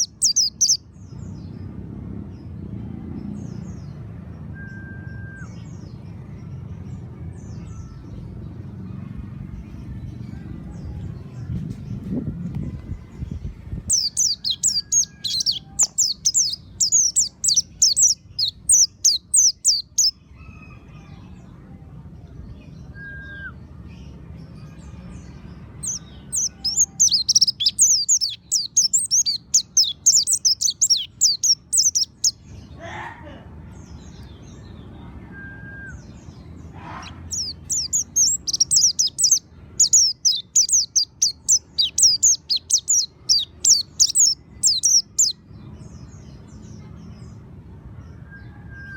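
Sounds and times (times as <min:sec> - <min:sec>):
bird twittering song: 0:00.0 - 0:01.5, 0:11.5 - 0:20.2, 0:25.8 - 0:32.6, 0:33.8 - 0:47.4.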